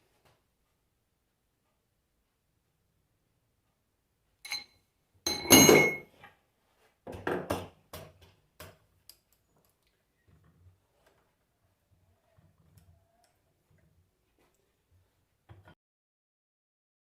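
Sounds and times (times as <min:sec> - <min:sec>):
metal tools clinking and clattering: 0:04.5 - 0:06.1.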